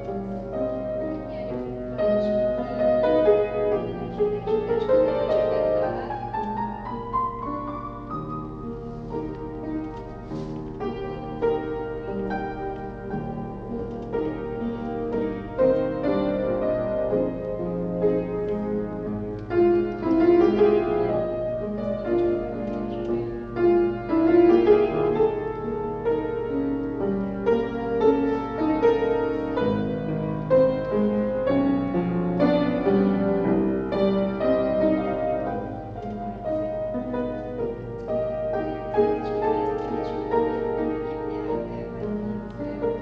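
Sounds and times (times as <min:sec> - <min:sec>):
solo classical piano: 0:00.0 - 0:43.0.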